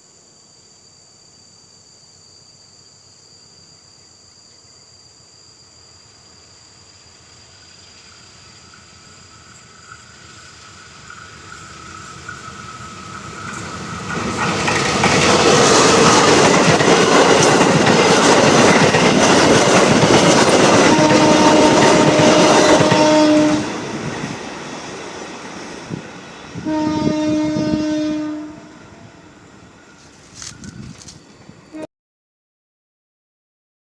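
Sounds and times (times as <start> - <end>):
insects: 0.0 - 31.9
train passing: 7.1 - 31.9
wheels clattering on rails: 9.5 - 23.0
locomotive horn: 20.7 - 23.7, 26.6 - 29.2.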